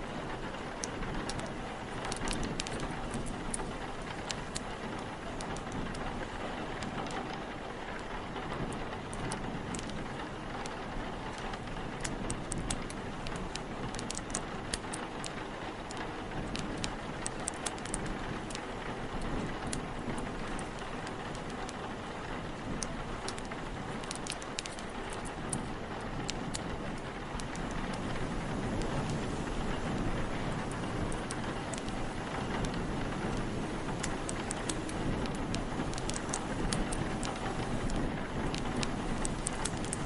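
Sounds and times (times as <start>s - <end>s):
heavy rain: 0.0s - 40.0s
log fire crackling: 0.0s - 40.0s.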